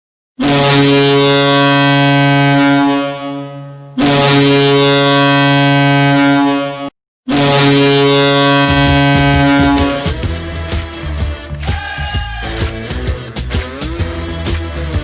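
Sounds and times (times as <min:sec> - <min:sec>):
goal horn blasts: 0:00.4 - 0:12.2.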